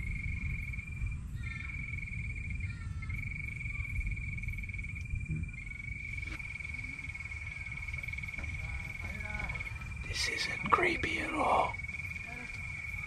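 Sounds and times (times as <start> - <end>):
frog trilling: 5.5 - 13.0.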